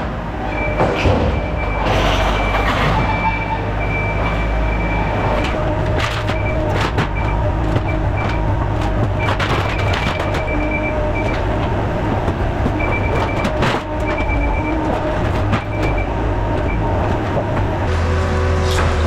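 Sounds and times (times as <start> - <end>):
diesel engine rumbling: 0.0 - 19.0
high squeals: 0.5 - 5.2.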